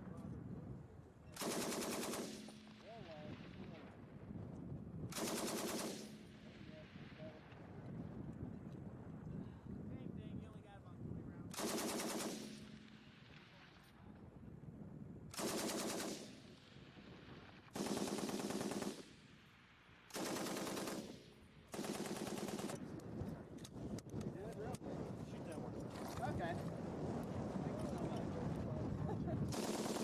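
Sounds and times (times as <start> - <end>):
machine gun automatic bursts: 1.4 - 2.8, 5.1 - 6.3, 11.5 - 12.8, 15.4 - 16.5, 17.7 - 19.1, 20.1 - 22.8, 29.5 - 30.0.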